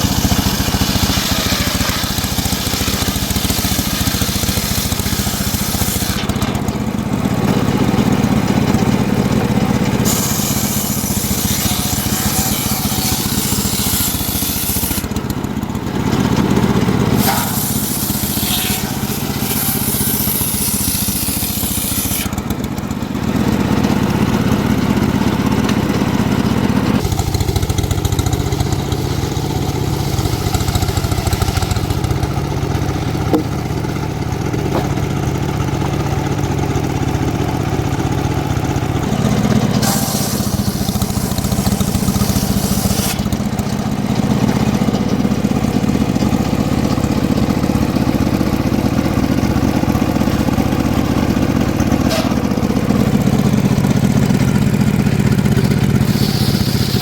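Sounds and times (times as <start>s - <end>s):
saw mill engine running: 0.0s - 57.0s.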